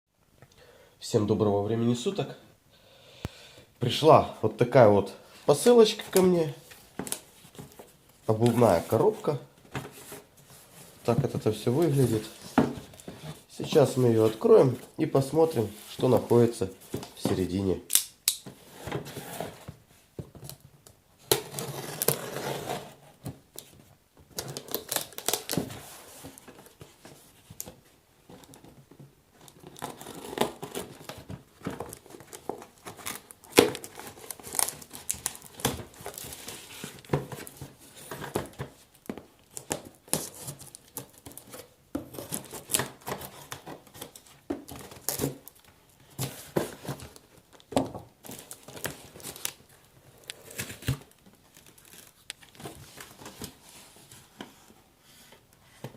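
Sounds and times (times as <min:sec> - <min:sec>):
cardboard packaging rustling and tearing: 0:21.2 - 0:28.7, 0:29.4 - 0:54.4.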